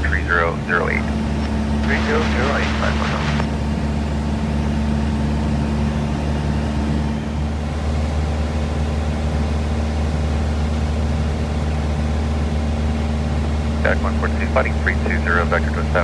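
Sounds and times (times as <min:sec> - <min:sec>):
steady hums: 0:00.0 - 0:04.2, 0:13.8 - 0:16.0
airplane engine and propeller drone: 0:00.0 - 0:16.0.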